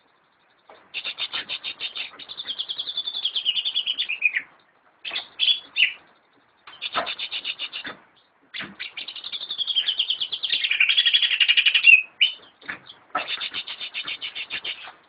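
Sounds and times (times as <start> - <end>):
bird singing high chirping notes: 1.0 - 4.5, 5.1 - 6.0, 8.8 - 12.4.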